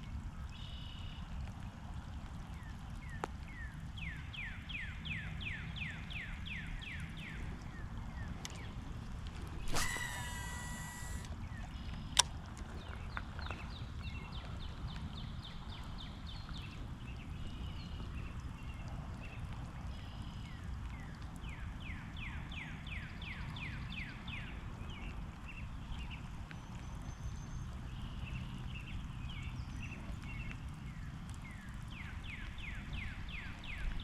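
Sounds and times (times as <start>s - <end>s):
fishing line whizzing off spool: 9.5s - 11.3s
fishing reel chirping: 9.6s - 11.3s
reel click: 9.6s - 11.4s.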